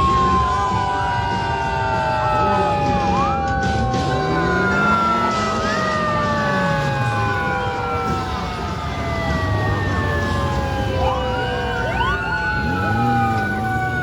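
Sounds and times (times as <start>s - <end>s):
motorcycle engines revving: 0.0s - 14.0s
police sirens wailing: 0.0s - 14.0s.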